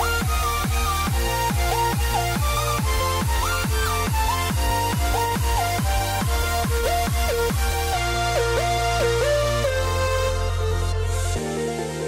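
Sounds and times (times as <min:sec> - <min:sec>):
steady kick drum: 0:00.0 - 0:08.0.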